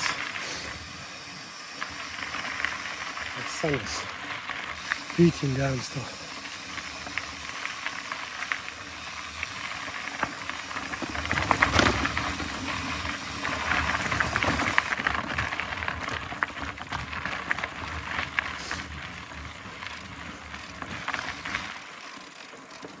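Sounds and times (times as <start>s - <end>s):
bike tyre and air hiss: 0.0s - 15.1s, 18.2s - 22.8s
bike rattling over bumps: 0.0s - 23.0s.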